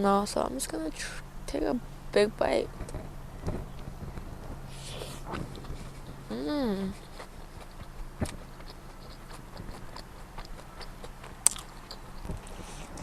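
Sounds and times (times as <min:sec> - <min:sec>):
low steady hum: 0:00.0 - 0:13.0
person chewing food: 0:04.7 - 0:13.0.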